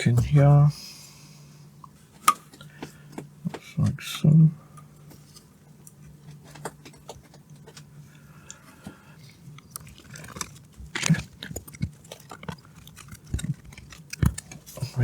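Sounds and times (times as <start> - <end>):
plastic parts clicking and knocking: 9.5 - 14.8.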